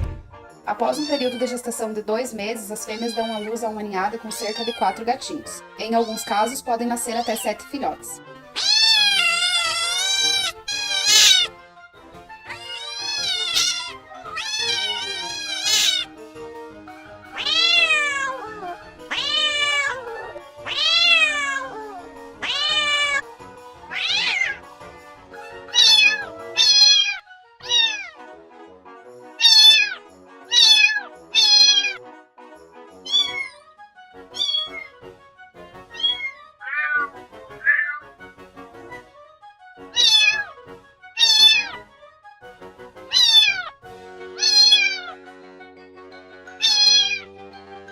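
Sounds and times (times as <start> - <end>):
soft background music: 0.0 - 47.9
cat meowing: 0.9 - 1.6, 4.2 - 5.0, 8.6 - 11.5, 12.4 - 16.1, 17.3 - 24.6, 25.7 - 28.2, 29.4 - 32.0, 33.0 - 33.6, 34.3 - 35.0, 35.9 - 38.1, 39.9 - 40.6, 41.2 - 41.8, 43.1 - 43.8, 44.4 - 45.2, 46.5 - 47.3.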